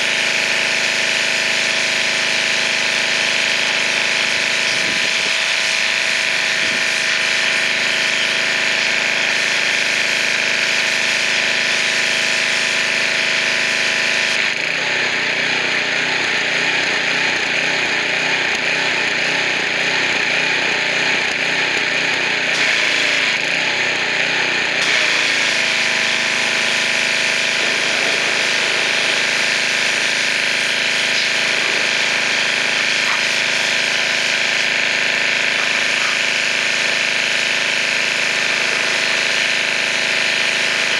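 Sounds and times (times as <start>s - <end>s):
pressure washer motor humming: 0.0s - 40.9s
water jet hissing: 24.9s - 40.9s.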